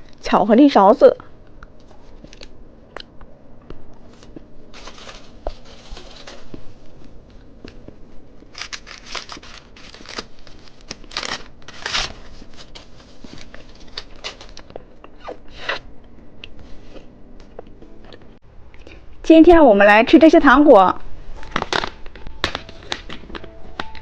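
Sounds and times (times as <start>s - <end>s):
plastic packages crinkling and tearing: 4.1s - 6.6s, 8.4s - 14.9s, 21.4s - 24.0s.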